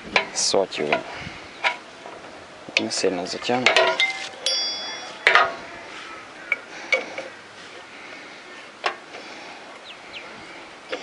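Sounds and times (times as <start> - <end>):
metal clinks from a spanner: 3.8 - 5.6.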